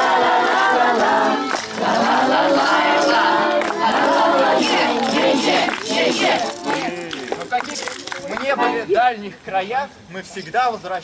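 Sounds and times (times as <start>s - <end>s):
group singing: 0.0s - 7.1s.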